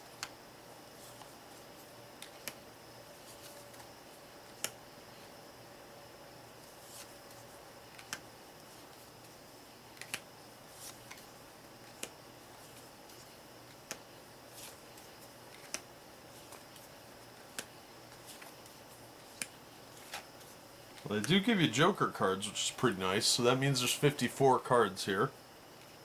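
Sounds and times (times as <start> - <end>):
playing cards snapping: 10.0 - 10.2, 15.5 - 15.8.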